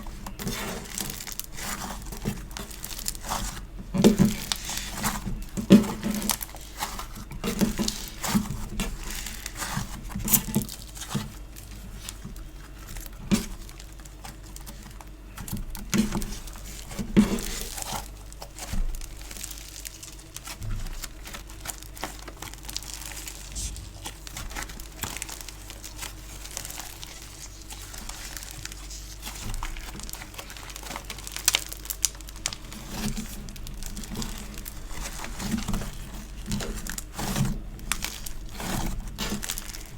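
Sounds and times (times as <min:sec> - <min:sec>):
sticky compound squished by hand: 0:20.4 - 0:26.1.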